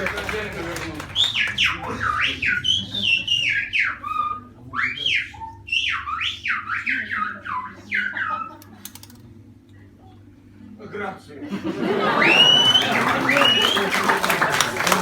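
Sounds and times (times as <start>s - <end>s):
person whistling in glides: 1.2s - 8.5s, 12.2s - 14.0s.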